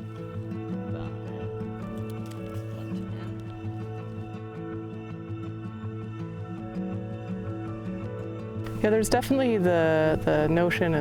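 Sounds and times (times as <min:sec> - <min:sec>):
soft background music: 0:00.0 - 0:11.0.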